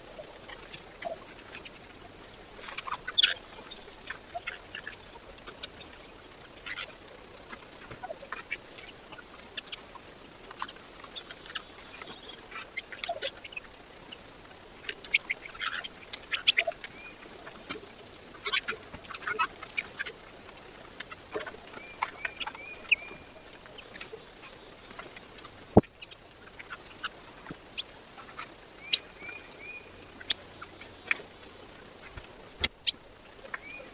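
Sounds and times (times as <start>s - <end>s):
faint steady hiss: 0.0s - 33.9s
birds chirping: 10.7s - 33.9s.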